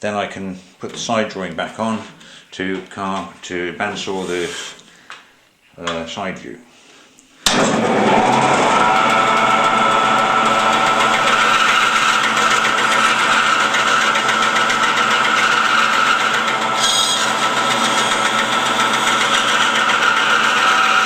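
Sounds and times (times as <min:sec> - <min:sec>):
bandsaw cutting wood: 0:07.5 - 0:21.0.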